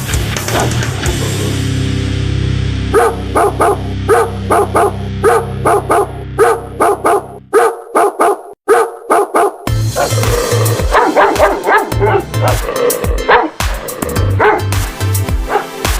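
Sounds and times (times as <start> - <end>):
dog barking: 2.9 - 10.2, 10.9 - 12.6, 13.2 - 13.6, 14.4 - 14.7, 15.4 - 15.8.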